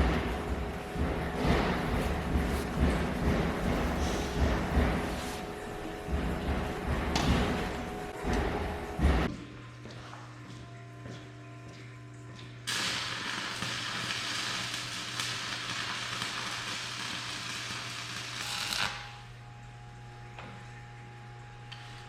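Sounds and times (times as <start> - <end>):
electrical hum: 0.0 - 22.0
welding arc crackling: 12.7 - 19.4.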